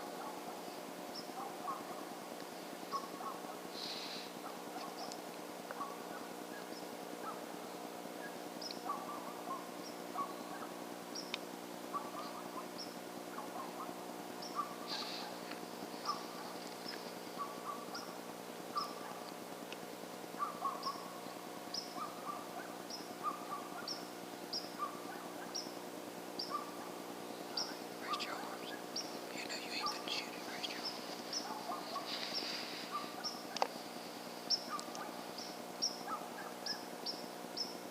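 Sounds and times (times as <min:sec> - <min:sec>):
steady low hum: 0:00.0 - 0:37.9
lower bird calls: 0:02.5 - 0:05.2, 0:05.8 - 0:19.3, 0:20.4 - 0:25.8, 0:26.4 - 0:33.7, 0:34.4 - 0:37.8
bird chirping: 0:16.0 - 0:19.2, 0:20.4 - 0:25.8, 0:26.4 - 0:26.9, 0:27.5 - 0:33.6, 0:34.4 - 0:37.8.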